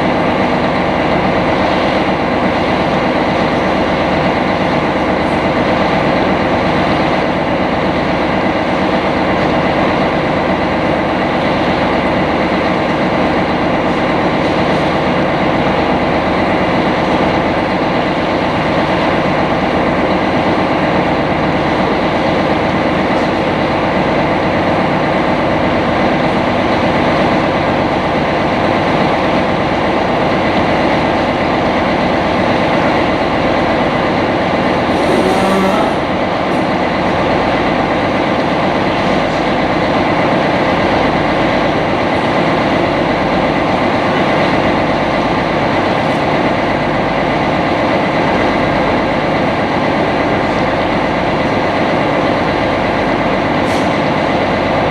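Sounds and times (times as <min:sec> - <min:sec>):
boat engine droning: 0:00.0 - 0:54.9.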